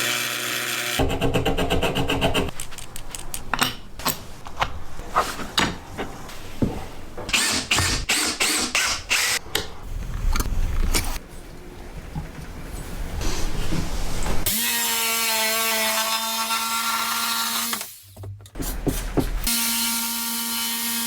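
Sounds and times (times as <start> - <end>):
tools clicking and knocking on wood: 1.1 - 4.8.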